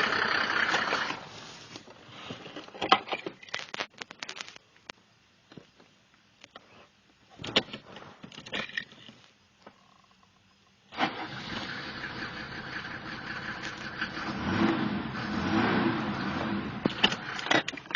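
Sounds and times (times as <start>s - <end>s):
diesel engine starting and running: 0.0s - 1.4s, 10.9s - 17.9s.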